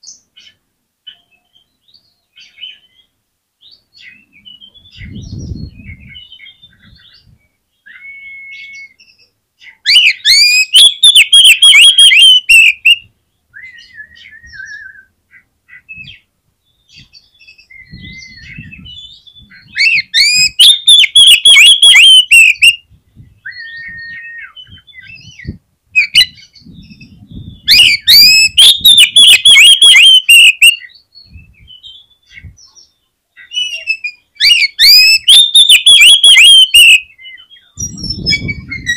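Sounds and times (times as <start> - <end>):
bird drawn-out whistles: 7.8 - 9.1, 9.9 - 13.0, 13.6 - 15.1, 17.7 - 22.8, 23.4 - 26.6, 27.6 - 31.6, 33.5 - 38.9
bird singing fast repeated notes: 9.8 - 13.0, 17.2 - 22.8, 23.5 - 30.9, 33.6 - 37.0.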